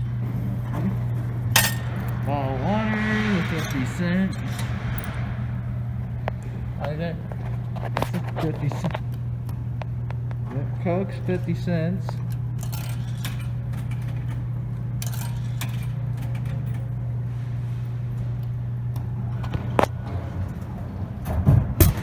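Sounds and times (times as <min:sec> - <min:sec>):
vending machine humming: 0:00.0 - 0:22.0.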